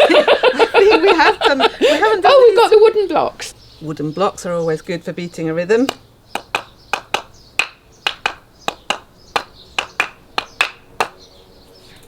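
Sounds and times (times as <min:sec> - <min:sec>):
wooden blocks clacking: 0:06.4 - 0:11.2.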